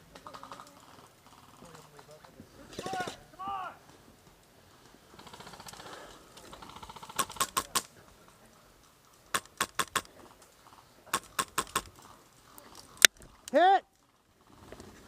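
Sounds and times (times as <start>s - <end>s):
airsoft gun firing bursts: 6.6s - 7.9s, 9.3s - 10.1s, 11.1s - 11.9s.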